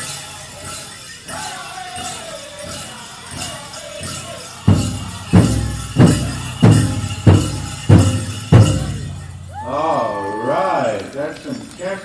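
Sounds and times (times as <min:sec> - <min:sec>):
bells jingling: 0:00.0 - 0:12.0
heavy drum beats: 0:04.0 - 0:09.8.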